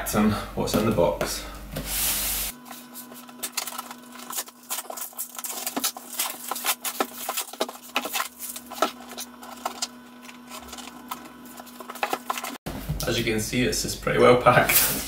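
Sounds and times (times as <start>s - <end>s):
packing material crinkling: 2.5s - 12.6s.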